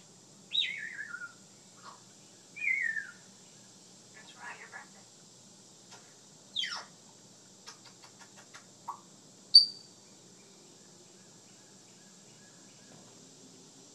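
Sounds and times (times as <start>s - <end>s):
parrot clicks: 7.6s - 9.0s.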